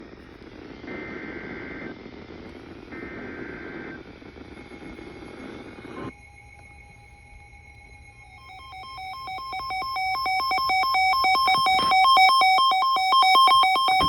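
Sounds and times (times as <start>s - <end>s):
radio static hissing: 0.0s - 6.1s, 8.5s - 14.0s
faint steady tone: 0.0s - 14.0s
shrill digital data bursts: 3.8s - 14.0s.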